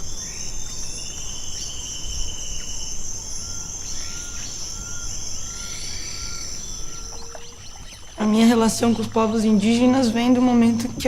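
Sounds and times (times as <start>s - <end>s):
birds calling: 0.0s - 11.0s
insects droning: 0.0s - 11.0s
whistled bird note: 0.2s - 8.2s.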